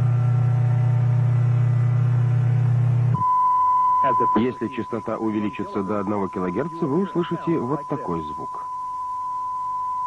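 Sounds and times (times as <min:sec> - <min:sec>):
car engine low drone: 0:00.0 - 0:03.5.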